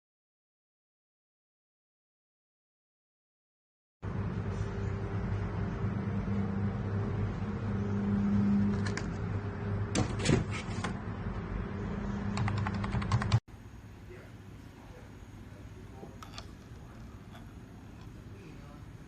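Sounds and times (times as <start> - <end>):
steady low hum: 4.0 - 19.0.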